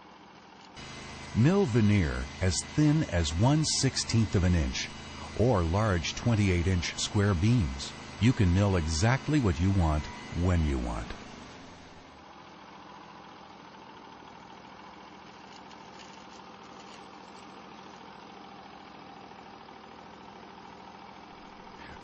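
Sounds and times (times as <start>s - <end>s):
gas engine running: 0.8s - 12.4s
faint steady whine: 0.8s - 22.0s.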